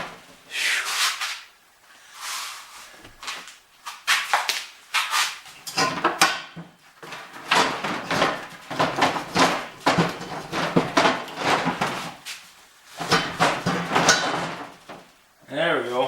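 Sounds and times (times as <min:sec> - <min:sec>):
hard parts clanking and knocking: 0:05.6 - 0:12.2, 0:13.0 - 0:15.2.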